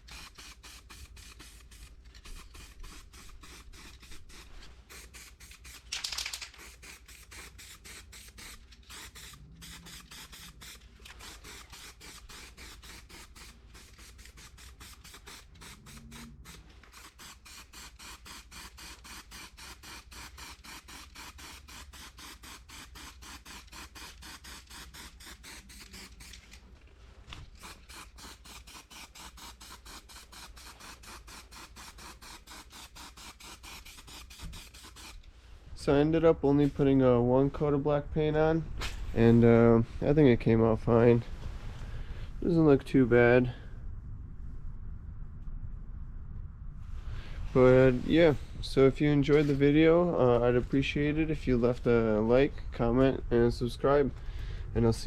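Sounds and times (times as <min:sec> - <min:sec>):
rhythmic scraping: 0:00.0 - 0:26.6, 0:27.6 - 0:35.2
short bright hiss: 0:00.0 - 0:26.6.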